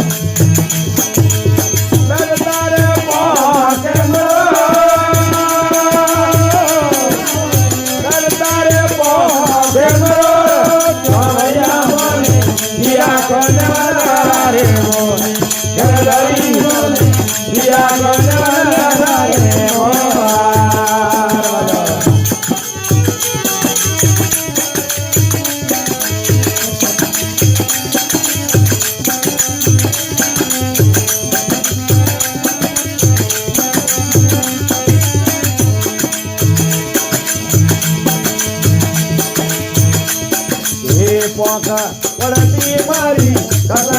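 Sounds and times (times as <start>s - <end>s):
rattling percussion: 0.0s - 43.9s
repeating drum beat: 0.0s - 43.9s
person singing: 2.1s - 23.7s.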